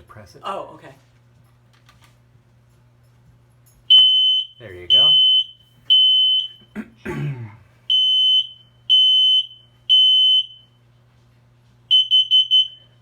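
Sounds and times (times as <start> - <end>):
smoke alarm beeping: 3.9 - 6.7, 7.9 - 10.8, 11.9 - 13.0.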